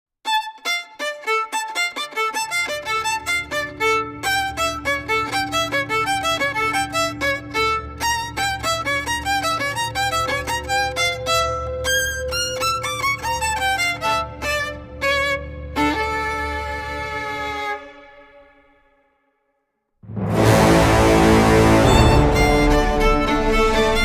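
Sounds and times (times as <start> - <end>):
low drone: 20.0 - 24.0
violin playing quick detached notes: 20.3 - 24.0.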